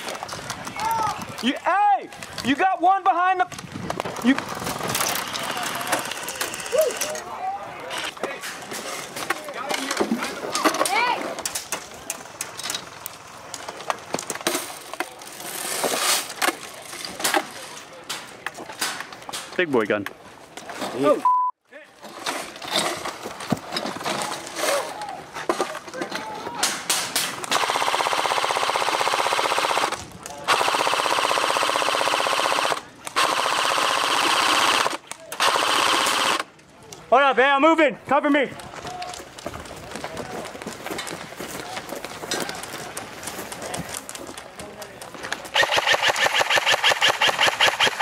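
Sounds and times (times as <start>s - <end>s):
airsoft gun firing full auto: 27.5s - 36.4s, 45.5s - 48.0s
airsoft shots clicking: 45.6s - 48.0s.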